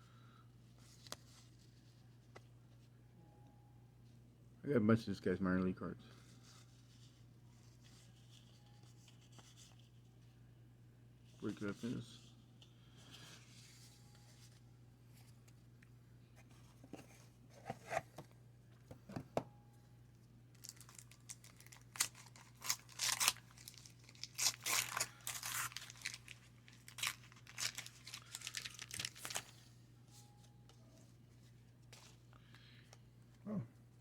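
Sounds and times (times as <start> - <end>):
wax paper tearing: 20.6 - 29.5
wrapper crinkling: 20.6 - 29.6.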